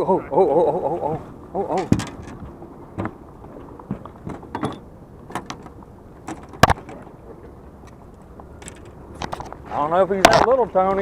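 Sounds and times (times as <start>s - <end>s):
low steady hum: 0.0s - 10.9s
clicks and knocks: 4.0s - 7.0s, 8.6s - 9.6s.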